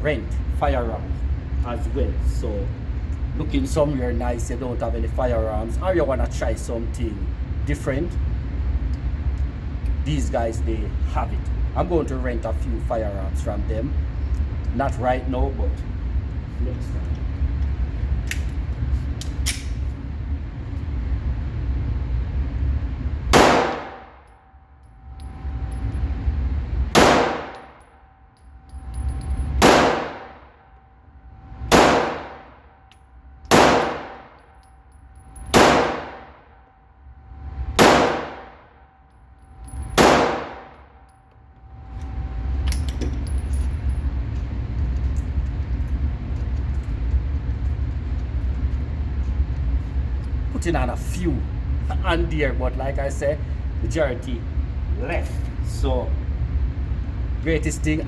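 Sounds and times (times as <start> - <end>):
steady low hum: 0.0 - 58.0
pistol shots with echo: 23.4 - 24.1, 27.0 - 27.7, 29.6 - 30.4, 31.7 - 32.5, 33.5 - 34.3, 35.5 - 36.4, 37.8 - 38.6, 40.0 - 40.8.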